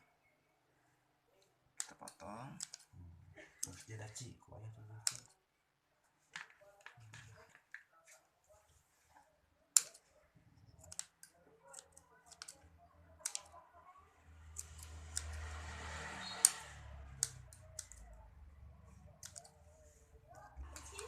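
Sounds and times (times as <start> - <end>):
sharp snipping clicks: 1.8 - 2.9, 9.7 - 10.0, 10.8 - 12.6, 13.2 - 13.6, 14.5 - 15.5, 16.2 - 18.2, 19.1 - 19.6.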